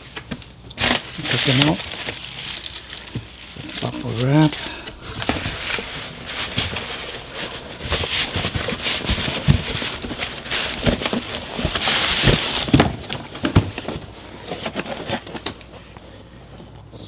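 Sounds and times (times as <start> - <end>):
bubble wrap crinkling: 0.0 - 16.0.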